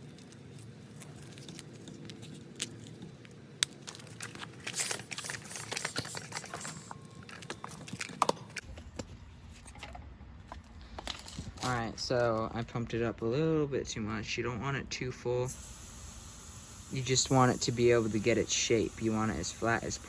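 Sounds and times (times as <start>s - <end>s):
small clicks and handling noises: 0.0s - 12.5s
steady low hum: 0.0s - 20.0s
hissing pump strokes: 15.5s - 20.0s.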